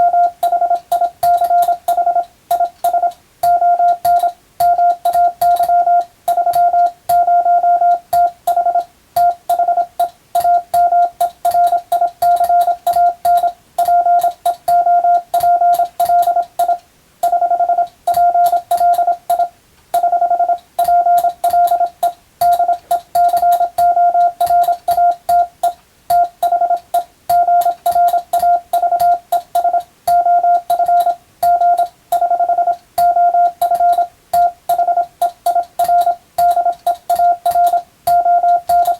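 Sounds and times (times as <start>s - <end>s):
morse code beeps: 0.0s - 38.9s
telegraph key clicks: 20.8s - 38.9s.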